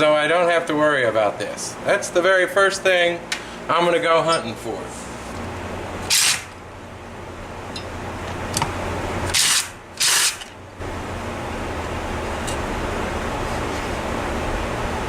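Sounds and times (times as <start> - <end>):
low steady hum: 0.0 - 15.0
tool hissing bursts: 6.0 - 6.5, 9.3 - 10.5.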